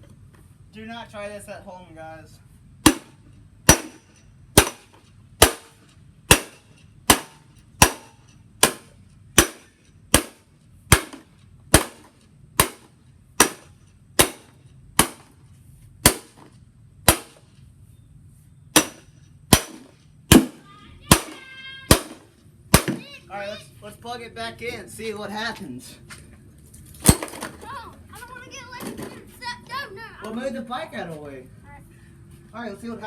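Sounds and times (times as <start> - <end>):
sharp ringing cracks: 2.8 - 15.4, 17.0 - 17.5, 18.7 - 23.2.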